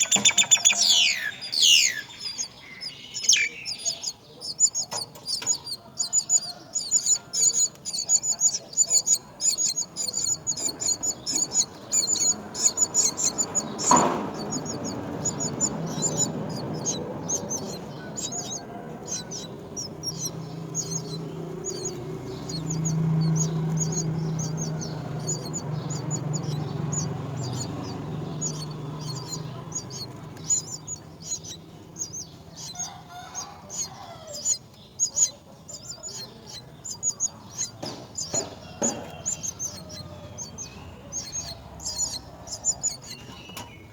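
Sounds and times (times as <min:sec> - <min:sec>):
nestling birds chirping: 0:00.0 - 0:43.9
sliding bird calls: 0:00.0 - 0:43.9.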